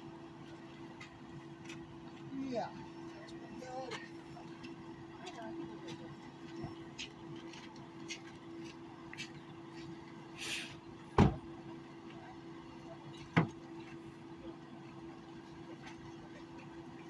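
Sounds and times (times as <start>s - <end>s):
short hiss: 10.4s - 10.8s
car doors slamming: 11.1s - 11.5s.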